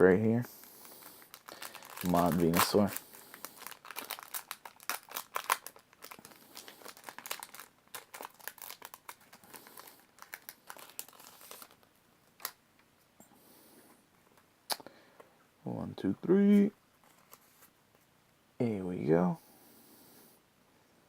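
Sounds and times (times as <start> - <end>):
foil wrapper crinkling and tearing: 0.8 - 12.6.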